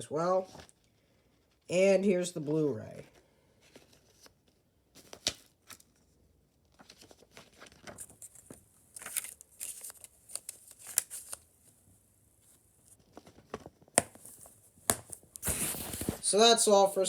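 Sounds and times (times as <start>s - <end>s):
plastic disc case clicks and rustling: 6.8s - 11.4s, 13.1s - 16.2s
plastic case snapping: 13.6s - 15.2s.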